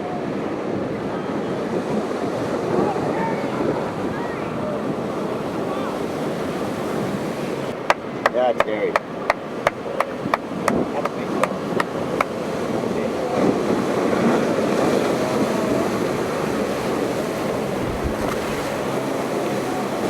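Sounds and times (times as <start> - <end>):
ocean waves rushing: 0.0 - 20.0.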